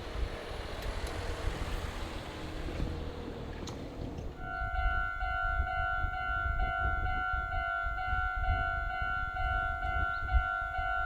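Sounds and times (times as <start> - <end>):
level crossing alarm ringing: 4.4 - 11.0.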